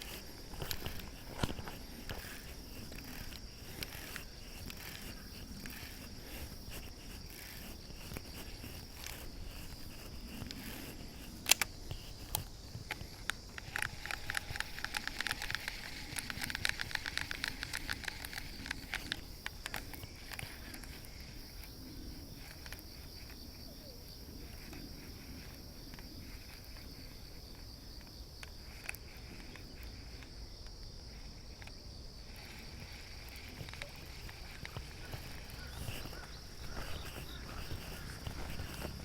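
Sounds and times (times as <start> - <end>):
rapid ticking: 0.0 - 21.8, 32.3 - 39.0
small clicks: 0.0 - 23.8, 24.4 - 39.0
high insect buzz: 0.0 - 39.0.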